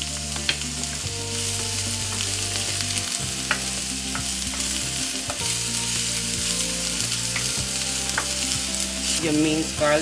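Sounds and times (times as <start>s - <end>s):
onion sizzling in oil: 0.0s - 10.0s
utensil clicking against pan: 7.3s - 8.4s.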